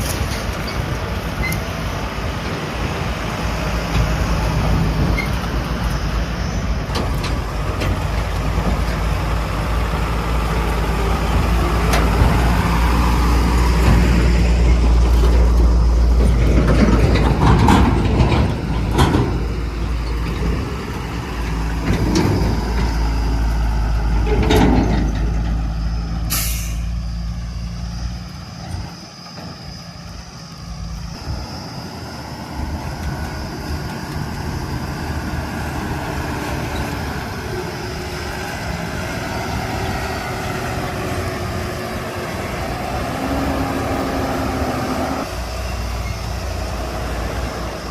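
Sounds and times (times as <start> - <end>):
heavy diesel engines running: 0.0 - 47.9
metal clanks and knocks: 16.2 - 19.5, 24.2 - 25.6
air brake hiss: 26.3 - 27.2.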